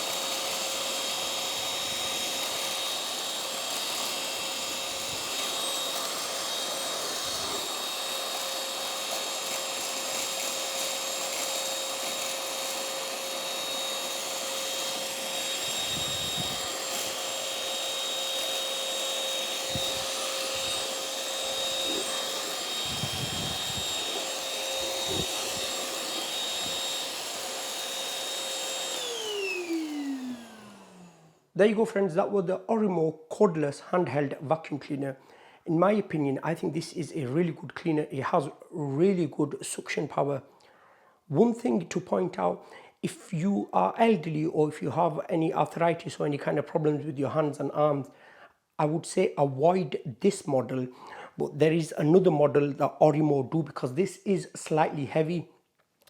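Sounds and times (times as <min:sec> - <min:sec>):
handheld vacuum cleaner running: 0:00.0 - 0:31.5.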